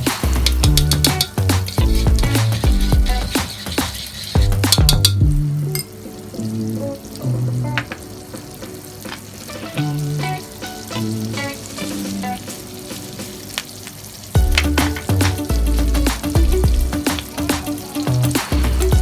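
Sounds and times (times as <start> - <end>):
food sizzling in a pan: 0.0 - 19.0
utensil clicking against pan: 0.1 - 5.3.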